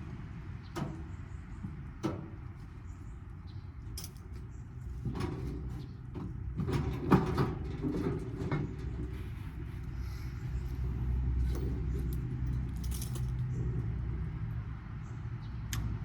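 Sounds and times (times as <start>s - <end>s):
parts knocking and clattering: 4.0s - 9.9s.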